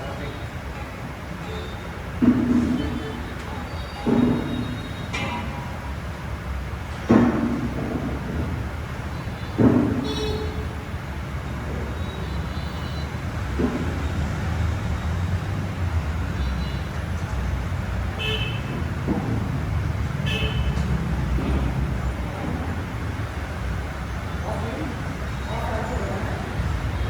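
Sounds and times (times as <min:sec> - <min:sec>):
road traffic rumble: 0:00.0 - 0:27.0.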